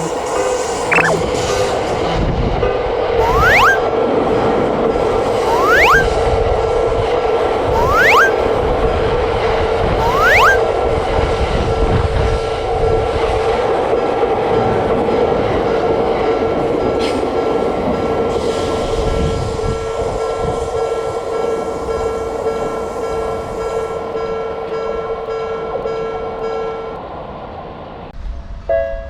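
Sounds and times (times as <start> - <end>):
short rising whistle: 0.9 - 1.2, 3.2 - 3.9, 5.4 - 6.2, 7.7 - 8.4, 10.0 - 10.6.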